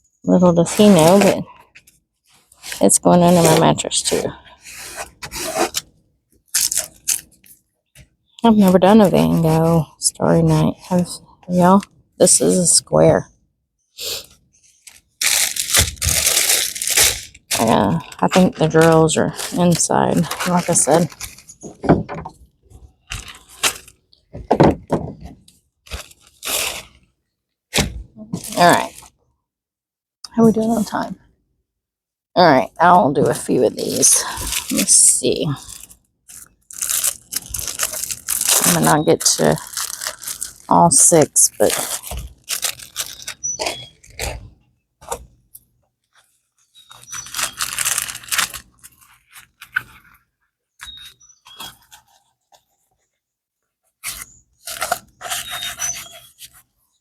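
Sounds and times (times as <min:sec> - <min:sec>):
plastic packaging crinkling: 0:00.7 - 0:07.6, 0:14.6 - 0:27.1, 0:33.3 - 0:53.1, 0:54.0 - 0:56.7.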